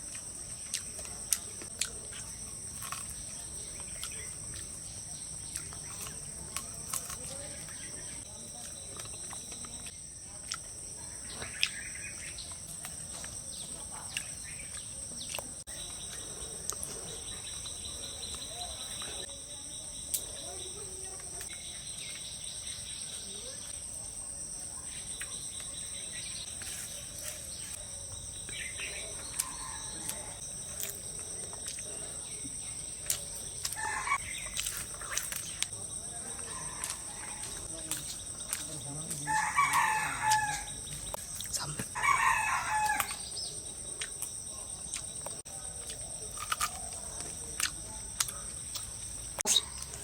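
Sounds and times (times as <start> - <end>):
insects droning: 0.0 - 50.0
pulsing insect trill: 0.0 - 50.0.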